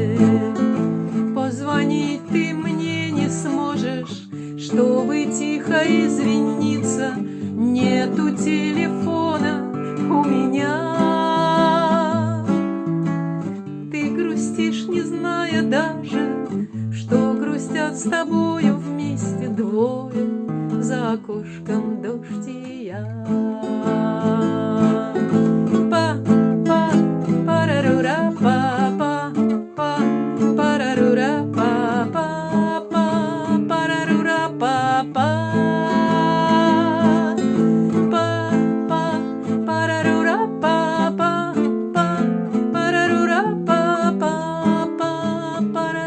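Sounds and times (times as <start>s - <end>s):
strummed acoustic guitar: 0.0s - 46.0s.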